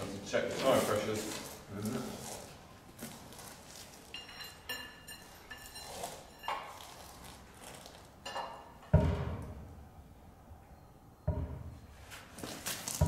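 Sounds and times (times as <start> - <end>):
heavy thuds: 9.0 - 9.7, 11.3 - 12.0.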